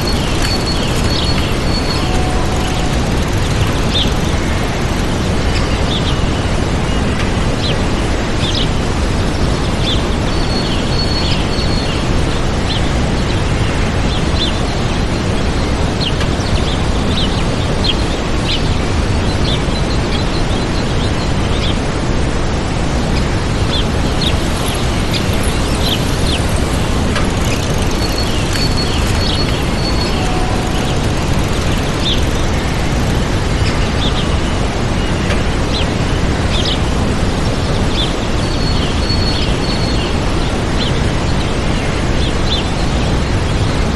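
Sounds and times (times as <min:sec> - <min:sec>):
waterfall rushing: 0:00.0 - 0:06.1, 0:21.9 - 0:38.4
small birds chirping: 0:00.0 - 0:06.2, 0:23.2 - 0:36.8.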